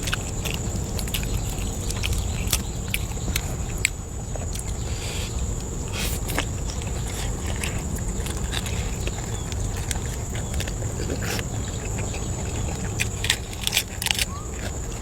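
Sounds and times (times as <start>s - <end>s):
chewing and lip smacks: 0.0s - 15.0s.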